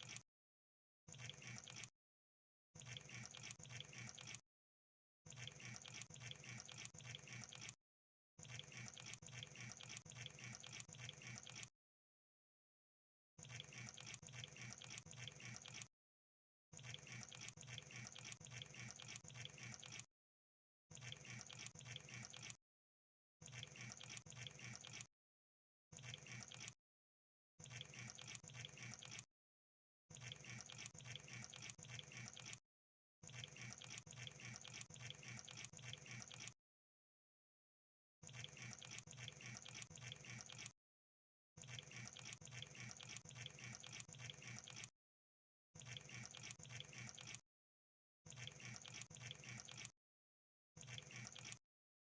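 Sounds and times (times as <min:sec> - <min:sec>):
crab rapid clicking and crackling: 0:02.8 - 0:04.4, 0:05.3 - 0:07.8, 0:08.4 - 0:11.7, 0:13.4 - 0:15.9, 0:16.8 - 0:20.1, 0:23.5 - 0:25.1, 0:30.1 - 0:32.6, 0:33.2 - 0:36.6, 0:38.3 - 0:40.8, 0:41.6 - 0:44.9, 0:45.8 - 0:47.4, 0:48.3 - 0:49.9, 0:50.8 - 0:51.6.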